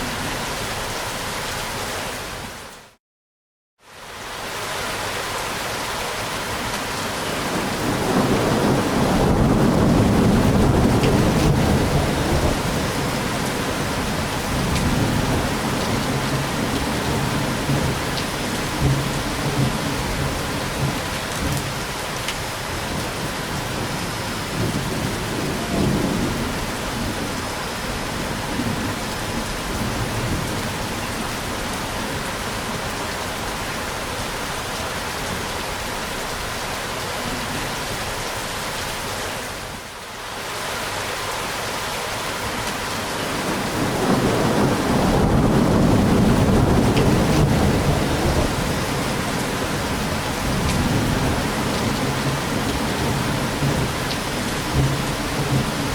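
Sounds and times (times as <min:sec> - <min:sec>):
steady rain: 0:00.0 - 0:03.0, 0:03.8 - 0:55.9
rolling thunder: 0:07.4 - 0:21.8, 0:43.3 - 0:55.9.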